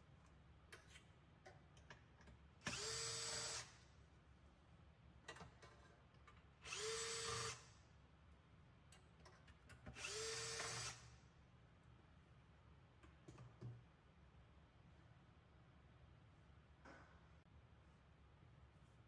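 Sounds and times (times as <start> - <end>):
cordless drill whine: 2.7 - 3.7, 6.7 - 7.6, 10.0 - 11.1.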